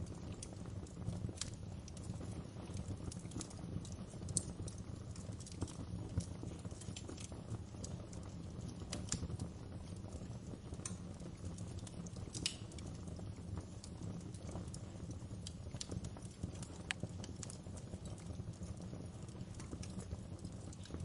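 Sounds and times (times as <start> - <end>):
fire crackling and popping: 0.0 - 21.0
fire rumbling: 0.0 - 21.0.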